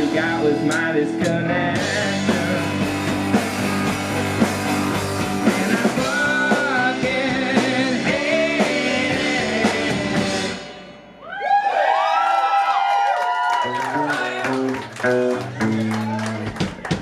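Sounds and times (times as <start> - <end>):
person singing: 0.0 - 3.1, 5.2 - 10.8
drums: 0.0 - 11.8, 13.6 - 17.0.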